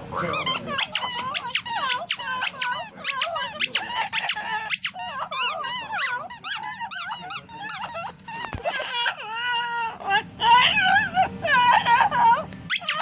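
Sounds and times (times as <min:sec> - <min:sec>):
bird squeaking: 0:00.4 - 0:09.4, 0:12.7 - 0:13.0.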